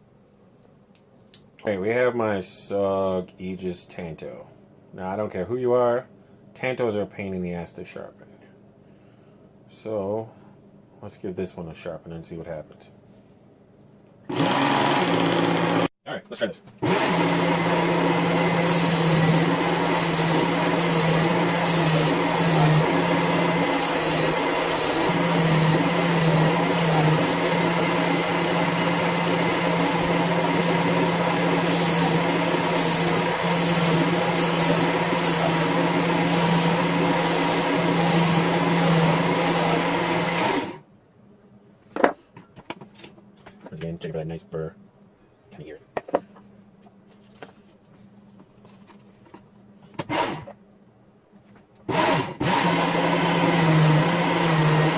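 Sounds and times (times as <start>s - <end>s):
knife sharpener motor and belt: 16.8s - 40.8s, 51.9s - 54.9s.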